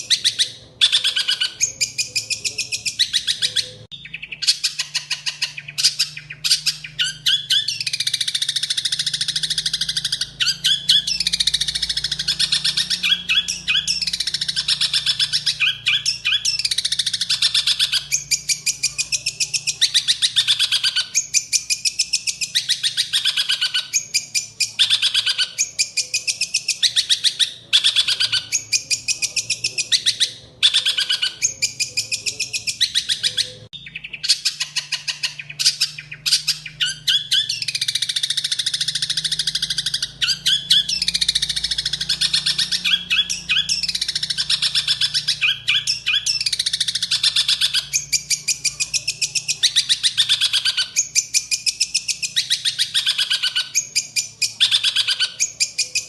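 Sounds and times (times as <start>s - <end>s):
songbird singing trills: 0.0s - 56.0s.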